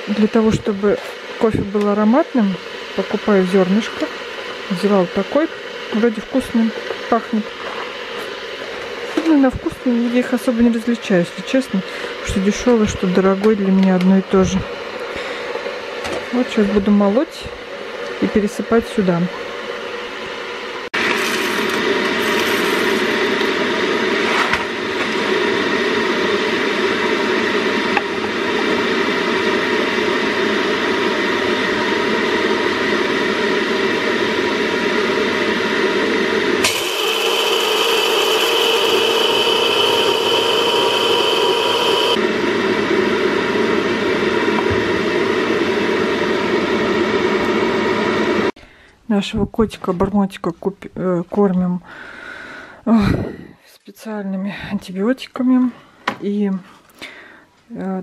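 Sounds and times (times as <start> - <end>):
electric coffee grinder running: 21.0 - 23.6, 36.0 - 42.3.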